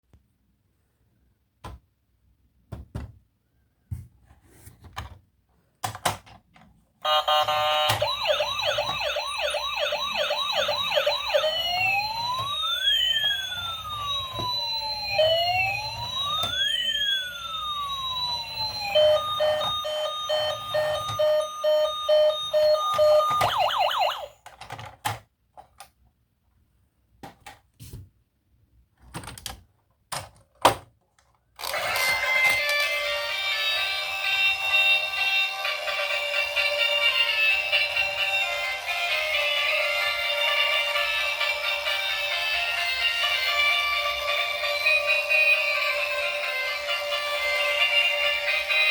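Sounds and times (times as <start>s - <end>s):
toy electronic siren: 7.0s - 24.4s, 31.6s - 48.9s.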